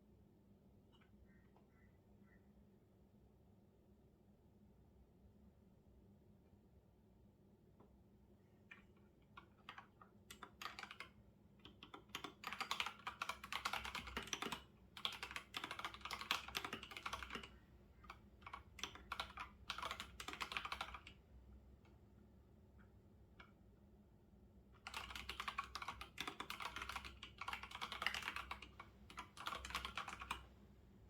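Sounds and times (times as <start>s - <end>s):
computer keyboard typing: 9.4s - 21.2s, 24.8s - 30.5s.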